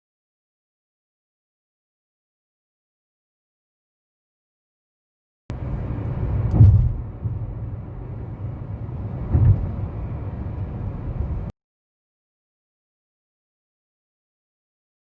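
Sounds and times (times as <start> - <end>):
vehicle rumbling on road: 5.5 - 11.5
heavy thumps: 6.5 - 7.5.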